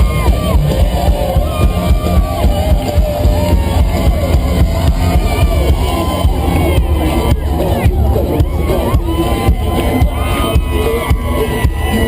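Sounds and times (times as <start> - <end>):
drum kit beat: 0.0 - 12.0
electric guitar: 0.0 - 12.0
live rock band playing: 0.0 - 12.0.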